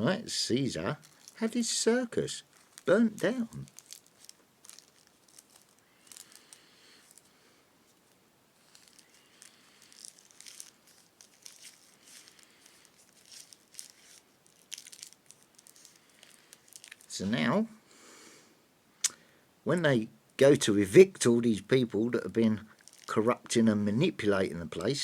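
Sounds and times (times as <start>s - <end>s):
faint rustling: 0.5s - 17.8s, 22.3s - 23.6s
small crackles and clicks: 1.0s - 1.5s, 2.4s - 7.3s, 8.0s - 17.2s, 22.7s - 23.5s.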